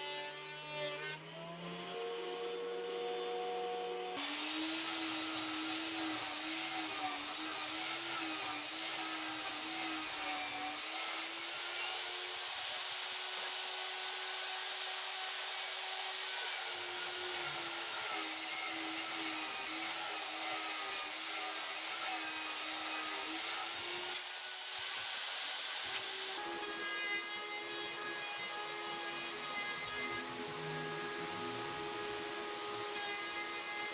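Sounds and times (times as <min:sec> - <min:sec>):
electric power tool whining: 0:00.0 - 0:21.1, 0:22.5 - 0:33.9.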